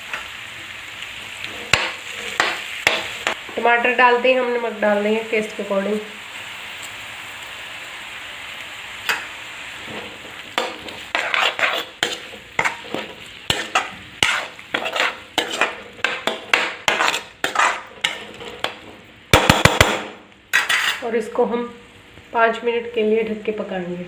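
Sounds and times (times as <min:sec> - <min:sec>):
vegetables sizzling in oil: 0:00.0 - 0:24.0
spoon scraping against pan: 0:01.2 - 0:03.5, 0:09.0 - 0:19.1, 0:20.5 - 0:21.1.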